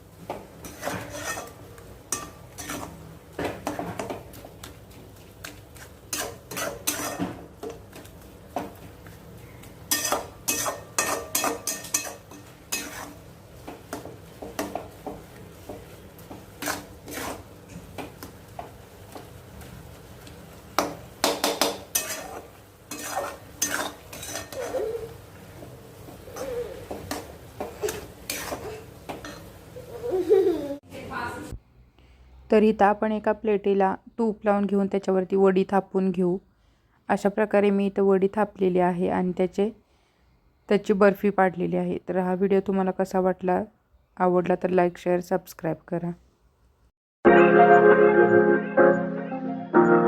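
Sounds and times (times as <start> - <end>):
spatula scraping a pan: 0.6 - 3.0, 5.6 - 7.8, 9.9 - 13.2, 16.4 - 17.5, 21.6 - 25.2, 26.0 - 29.5.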